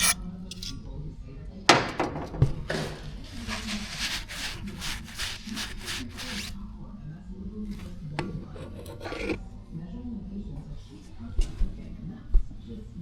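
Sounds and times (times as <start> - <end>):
rubbing or scraping strokes: 0.0 - 0.8, 3.5 - 6.6.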